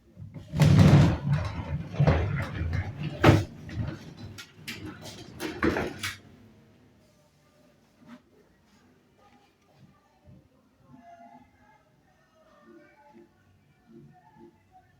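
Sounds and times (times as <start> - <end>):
knocks and rattles of handling: 0.2 - 6.3.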